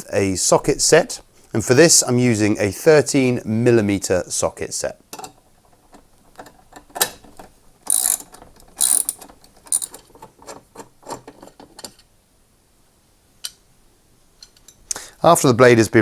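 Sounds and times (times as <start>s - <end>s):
ratchet wrench clicking: 7.9s - 10.0s.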